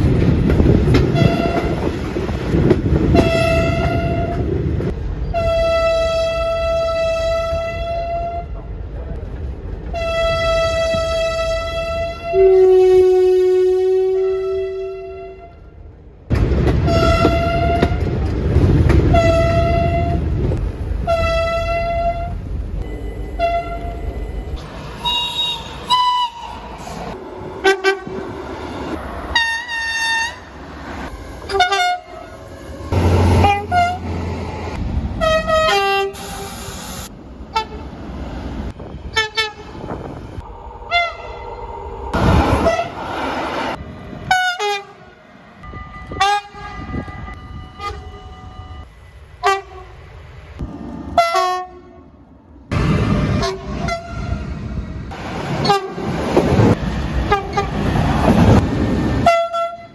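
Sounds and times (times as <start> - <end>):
passing train rumbling: 0.0 - 59.9
train horn blasts: 1.1 - 1.9, 3.1 - 4.5, 5.3 - 8.6, 9.9 - 15.8, 16.8 - 18.1, 19.1 - 20.2, 21.0 - 24.1, 25.0 - 26.6, 27.6 - 28.2, 29.3 - 30.5, 31.5 - 32.4, 33.0 - 34.0, 35.2 - 36.5, 39.1 - 39.8, 40.9 - 41.4, 44.2 - 50.0, 51.2 - 52.0, 53.3 - 54.4, 55.6 - 56.0, 59.2 - 59.9.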